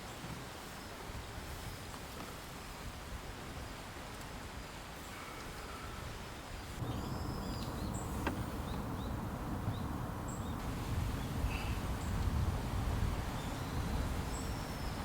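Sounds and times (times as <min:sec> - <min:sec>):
river rushing: 0:02.4 - 0:15.0
small birds chirping: 0:06.8 - 0:15.0.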